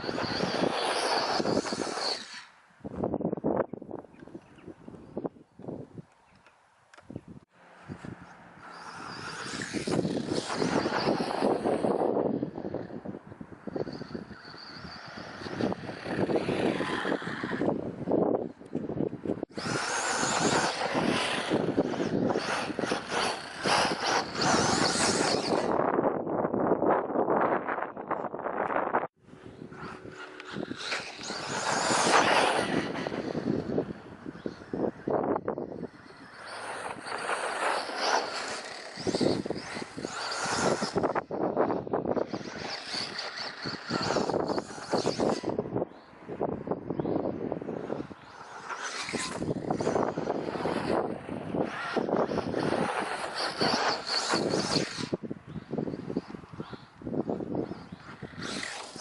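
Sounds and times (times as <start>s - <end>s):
electric motor whining: 0.0s - 2.5s, 7.9s - 13.0s, 19.5s - 25.8s, 29.4s - 45.6s, 47.8s - 59.0s
wind buffeting microphone: 0.0s - 6.4s, 7.0s - 59.0s.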